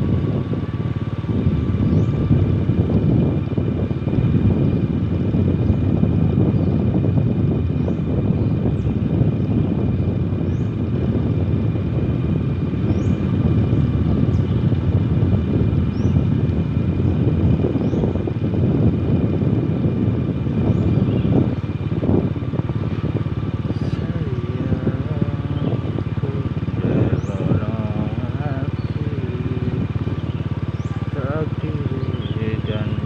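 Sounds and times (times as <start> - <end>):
vehicle engine running: 0.0 - 33.0
person speaking: 23.8 - 30.0, 30.9 - 33.0.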